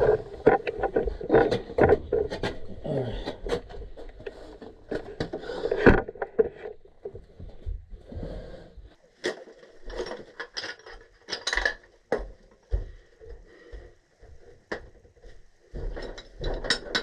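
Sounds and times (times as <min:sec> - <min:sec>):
metal tools clinking and knocking: 0:09.9 - 0:11.9, 0:15.8 - 0:17.0.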